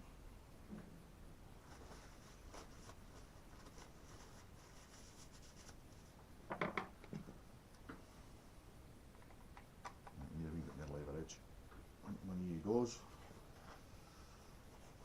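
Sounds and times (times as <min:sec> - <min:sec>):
faint rubbing and scraping: 0:12.6 - 0:15.0.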